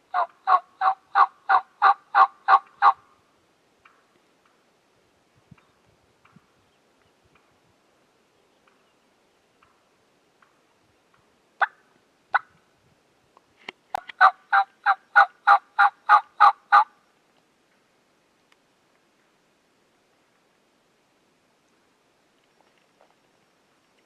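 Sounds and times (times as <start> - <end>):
wild turkey yelping: 0.1 - 3.0, 14.2 - 16.9.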